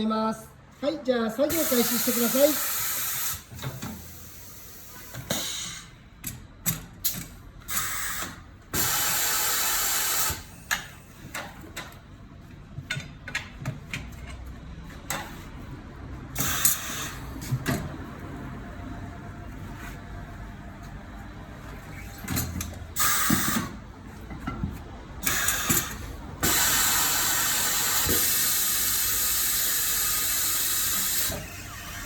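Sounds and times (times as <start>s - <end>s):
compressed air hiss: 1.5s - 6.0s, 7.7s - 10.5s, 23.0s - 23.7s, 25.2s - 31.4s
tools clicking and clanking: 12.7s - 15.4s, 22.2s - 26.6s.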